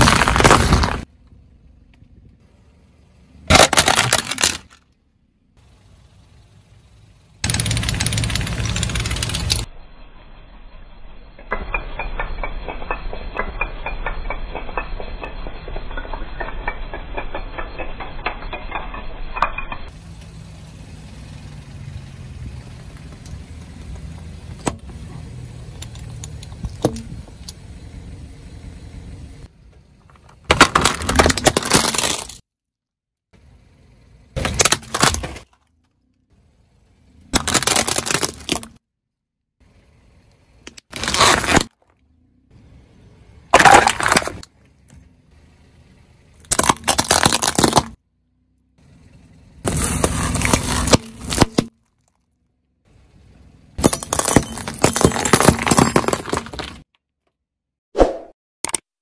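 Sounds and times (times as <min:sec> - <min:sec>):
objects crunching under a car: 0:00.0 - 0:01.1, 0:03.5 - 0:04.9, 0:29.9 - 0:32.4, 0:34.4 - 0:35.9, 0:37.4 - 0:38.8, 0:40.8 - 0:42.0, 0:43.5 - 0:44.6, 0:46.4 - 0:48.0, 0:49.6 - 0:52.4, 0:53.8 - 0:56.9.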